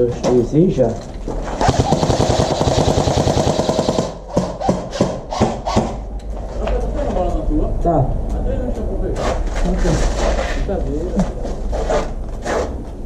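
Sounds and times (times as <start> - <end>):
airsoft rifle full-auto burst: 1.6 - 4.3.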